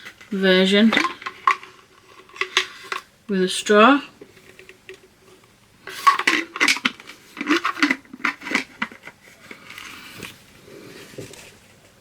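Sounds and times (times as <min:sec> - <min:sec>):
packaging clicks and rustles: 0:05.9 - 0:10.5.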